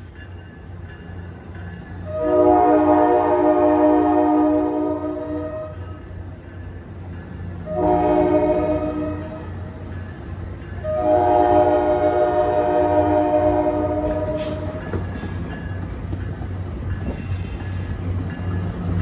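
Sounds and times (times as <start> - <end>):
low train rumble: 0.0 - 19.0
train air horn chord: 2.1 - 5.8, 7.6 - 9.6, 10.8 - 15.0.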